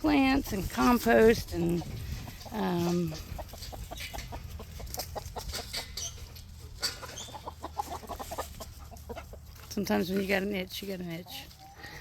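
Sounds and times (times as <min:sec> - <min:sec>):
chickens clucking: 0:00.1 - 0:12.0
chickens high calls: 0:01.7 - 0:09.6.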